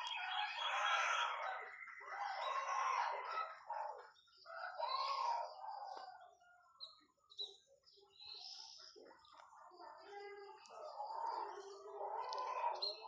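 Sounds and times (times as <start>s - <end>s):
high bird chirps: 0.0s - 3.0s.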